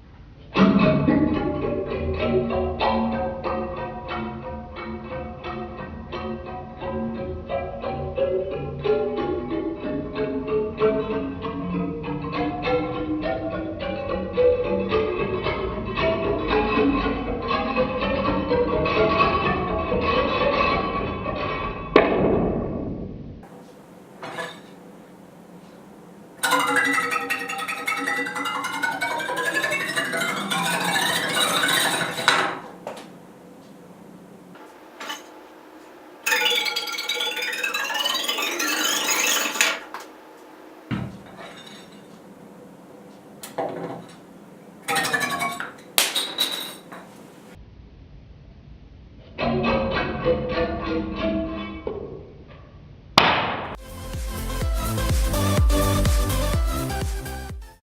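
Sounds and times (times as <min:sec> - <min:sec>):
iron bar ringing: 0:23.4 - 0:47.6.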